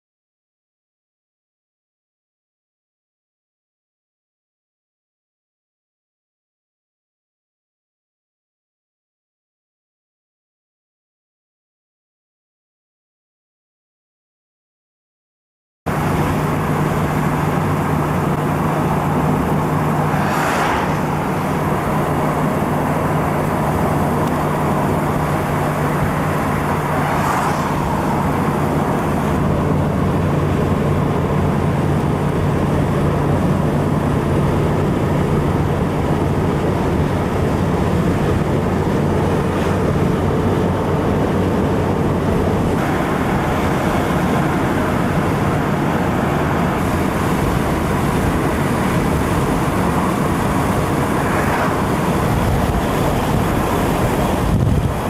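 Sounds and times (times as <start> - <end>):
vehicle and road noise: 15.9 - 55.0
vehicles passing whoosh: 15.9 - 55.0.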